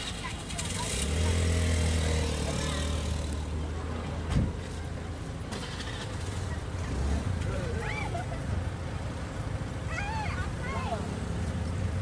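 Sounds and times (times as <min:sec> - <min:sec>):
vehicle engine humming: 0:00.0 - 0:12.0
thump: 0:04.3 - 0:04.6.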